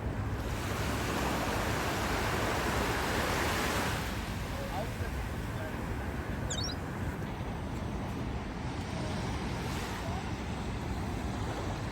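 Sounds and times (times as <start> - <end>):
high chirps: 6.5 - 6.8.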